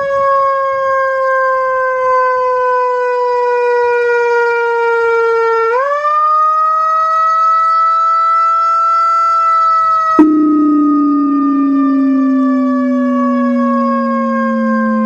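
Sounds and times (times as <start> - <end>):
ambulance siren: 5.7 - 15.0.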